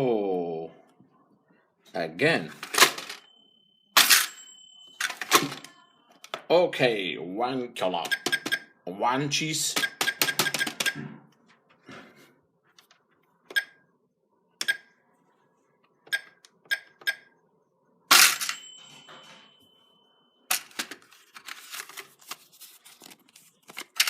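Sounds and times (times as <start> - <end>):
toy cash register beeps: 2.5 - 6.4, 7.9 - 8.8, 9.8 - 11.0, 13.5 - 13.9, 14.6 - 15.0, 16.0 - 17.4, 18.1 - 21.9
plastic toy pieces clattering: 2.6 - 3.2, 20.5 - 22.4, 23.7 - 24.0
ringing tone: 3.2 - 6.2, 18.5 - 20.5.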